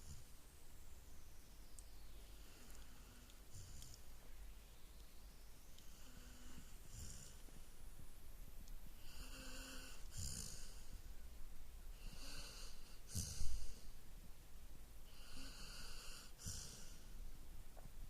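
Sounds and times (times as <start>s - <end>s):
dog snoring: 5.8s - 7.5s, 9.0s - 11.0s, 12.0s - 13.9s, 15.1s - 17.1s.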